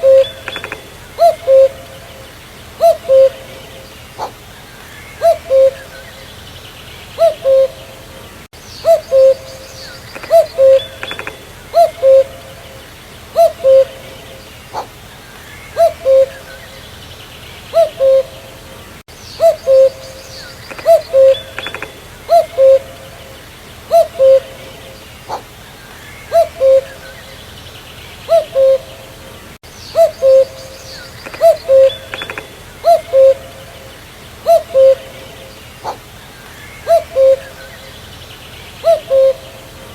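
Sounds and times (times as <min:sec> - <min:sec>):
faint bird chirps: 0:00.0 - 0:18.5, 0:29.7 - 0:39.8
cuckoo calling: 0:00.0 - 0:27.6, 0:28.2 - 0:38.1, 0:38.7 - 0:39.9.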